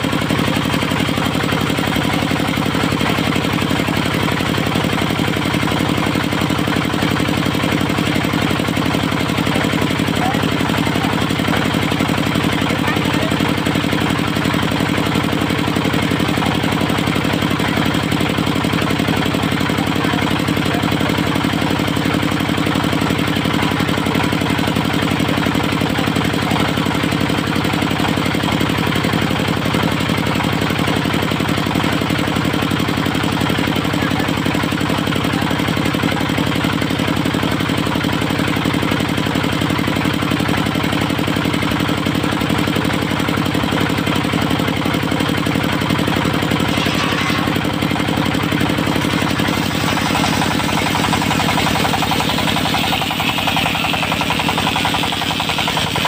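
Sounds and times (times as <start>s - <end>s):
diesel engine running steadily: 0.0s - 56.0s.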